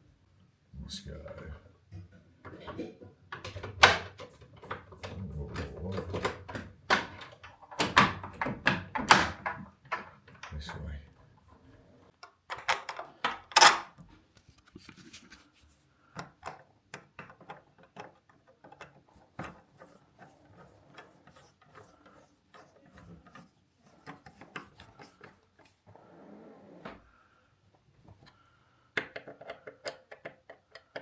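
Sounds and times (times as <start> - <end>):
lock hardware clicks and knocks: 1.9 - 10.8, 12.2 - 14.0, 16.2 - 19.1, 29.0 - 31.0.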